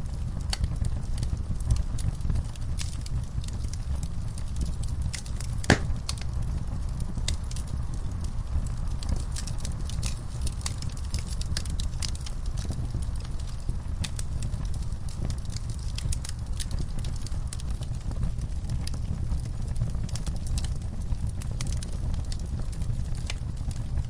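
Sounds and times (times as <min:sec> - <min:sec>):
wood fire crackling and popping: 0:00.0 - 0:24.0.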